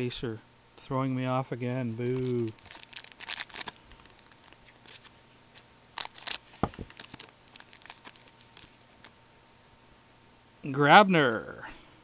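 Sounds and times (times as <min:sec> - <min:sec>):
wrapper crinkling and tearing: 0:02.0 - 0:05.1, 0:06.0 - 0:09.1
cards being shuffled: 0:02.0 - 0:09.1.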